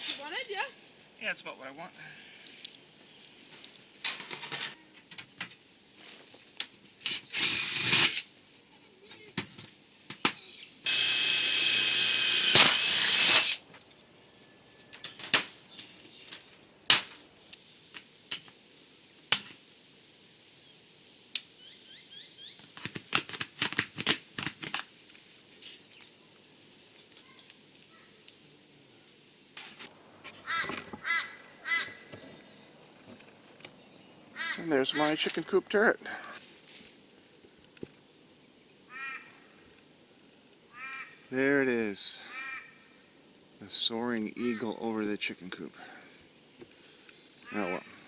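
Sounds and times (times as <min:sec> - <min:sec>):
power drill running: 0:07.1 - 0:08.3, 0:10.9 - 0:13.7.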